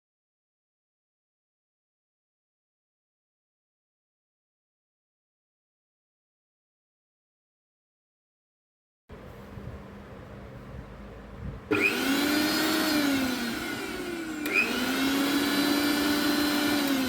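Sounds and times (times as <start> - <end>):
mixer grinder motor whining: 11.7 - 17.0.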